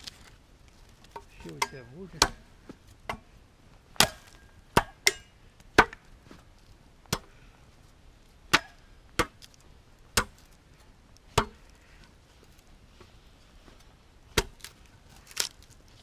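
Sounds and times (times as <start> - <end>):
saw blade chopping wooden log: 4.0 - 6.0, 8.5 - 9.4, 11.4 - 11.6, 14.4 - 14.7.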